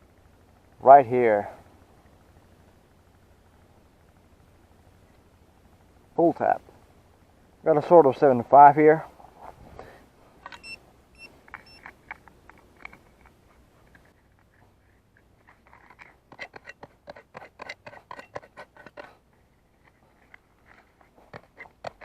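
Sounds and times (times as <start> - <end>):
metal detector beeps: 10.5 - 11.9.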